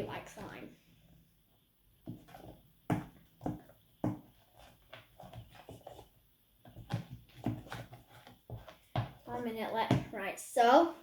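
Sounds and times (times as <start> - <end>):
spoon stirring wet slime: 2.0 - 9.5.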